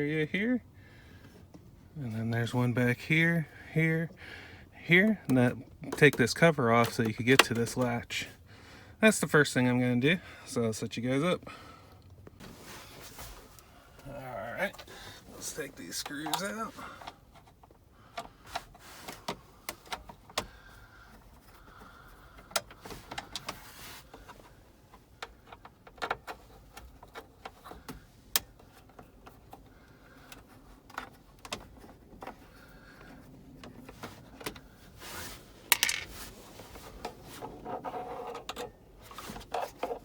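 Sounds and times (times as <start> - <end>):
tools clicking and scraping: 35.7 - 36.3.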